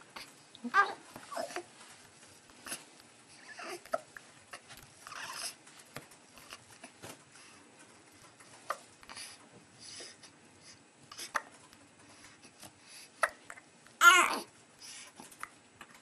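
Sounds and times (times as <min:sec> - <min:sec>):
baby breathing softly: 0:08.7 - 0:11.4, 0:12.0 - 0:13.2, 0:14.8 - 0:15.3.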